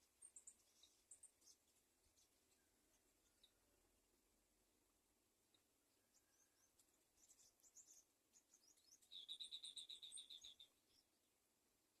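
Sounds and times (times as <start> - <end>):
faint high bird chirps: 0.0 - 3.7, 5.5 - 11.4.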